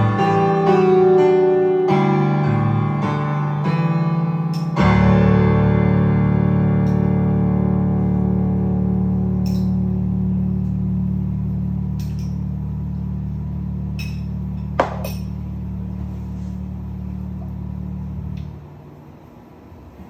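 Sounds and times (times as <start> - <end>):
music chord held: 0.0 - 14.7
sharp knock: 14.8 - 15.2.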